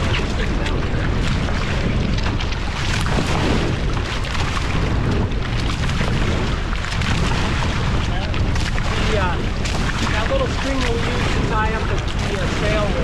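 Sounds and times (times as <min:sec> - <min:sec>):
water splashing around hulls: 0:00.0 - 0:13.0
wind buffeting microphone: 0:00.0 - 0:13.0.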